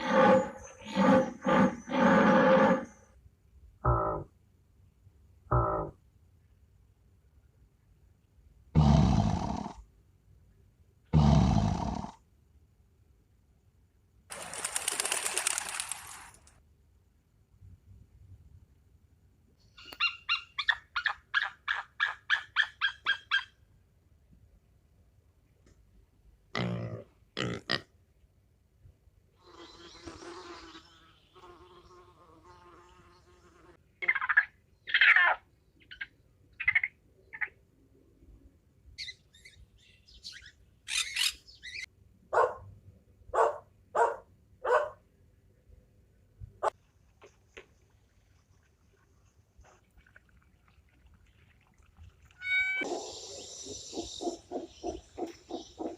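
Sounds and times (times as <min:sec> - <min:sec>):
bird chirping: 0:19.6 - 0:23.5, 0:39.0 - 0:41.9, 0:52.4 - 0:55.9
dog barking: 0:42.3 - 0:42.7, 0:43.3 - 0:45.0
short high-pitched animal calls: 0:52.4 - 0:55.9.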